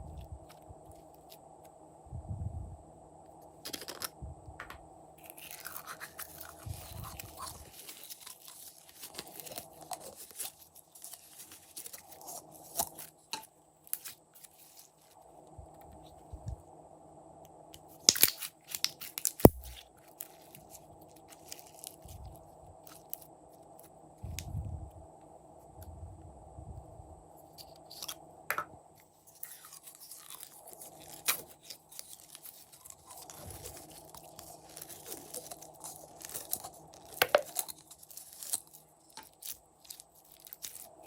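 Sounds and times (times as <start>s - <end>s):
slime squelching and crackling: 5.2s - 13.3s, 18.0s - 22.2s, 29.2s - 41.0s.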